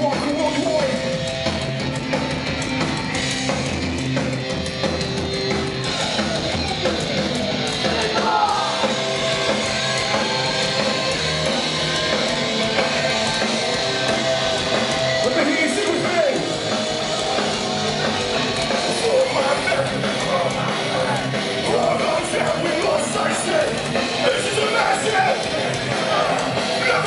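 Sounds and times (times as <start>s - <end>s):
vocals: 0.0s - 1.2s, 7.8s - 9.0s, 15.2s - 16.5s, 18.6s - 27.0s
drum kit: 0.0s - 27.0s
electric guitars: 0.0s - 27.0s.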